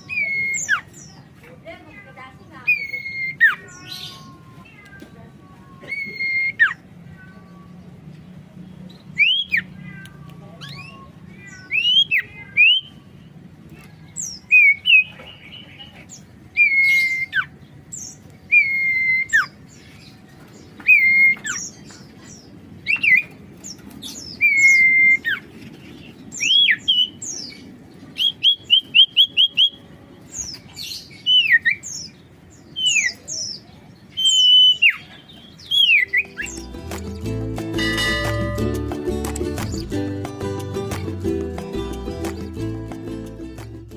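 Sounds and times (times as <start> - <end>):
bird singing whistled notes: 0.0 - 1.2, 2.6 - 4.6, 8.9 - 9.7, 10.6 - 13.0, 16.5 - 19.6, 24.1 - 25.4, 28.2 - 29.8, 31.1 - 37.2.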